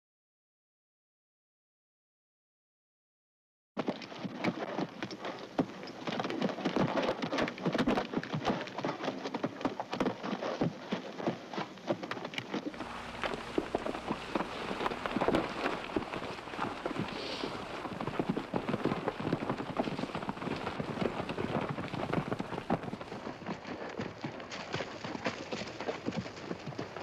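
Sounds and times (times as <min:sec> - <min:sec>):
high hiss: 0:12.8 - 0:19.0
low rumble: 0:12.8 - 0:23.1.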